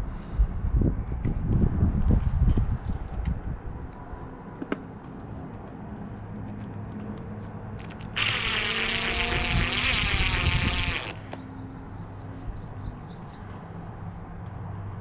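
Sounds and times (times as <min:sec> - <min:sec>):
power drill running: 0:07.8 - 0:11.2.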